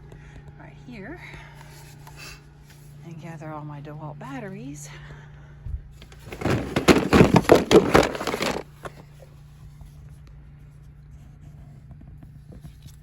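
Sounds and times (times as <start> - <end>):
batteries clattering and scraping: 6.0 - 9.0.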